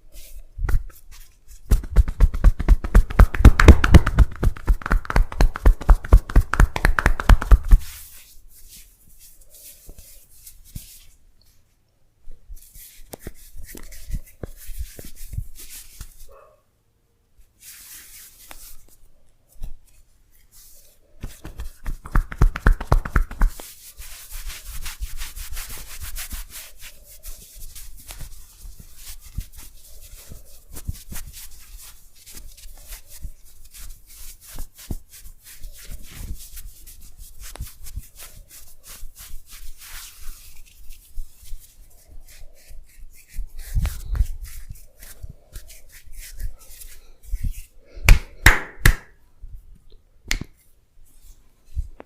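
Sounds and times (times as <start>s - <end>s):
hands rubbing skin in massage: 0.0s - 11.6s, 12.3s - 16.3s, 17.6s - 49.2s.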